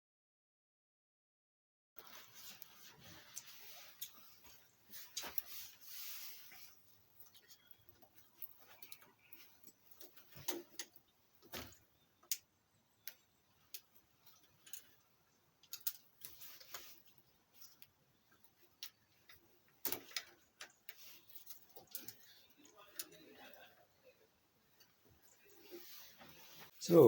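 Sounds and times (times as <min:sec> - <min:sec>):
motorcycle parts clicking and knocking: 0:07.2 - 0:23.5.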